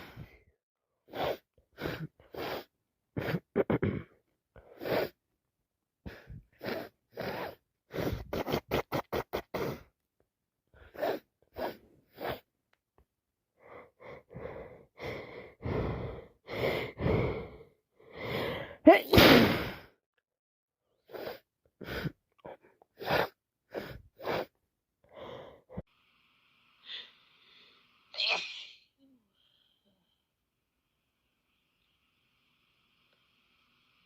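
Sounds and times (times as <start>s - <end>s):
gasping intakes of breath: 13.6s - 18.8s
women sneezing: 28.2s - 28.9s.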